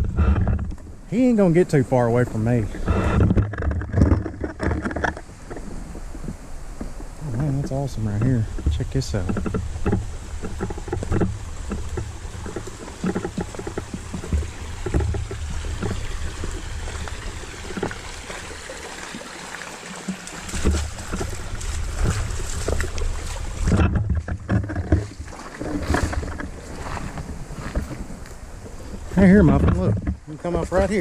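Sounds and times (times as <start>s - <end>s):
low rumbling bumps: 0.0s - 19.2s, 20.4s - 31.0s
creek water splashing: 0.0s - 31.0s.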